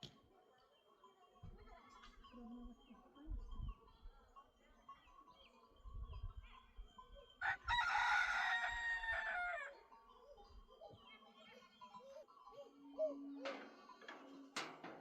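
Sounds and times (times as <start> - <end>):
rooster crowing: 7.4 - 9.8.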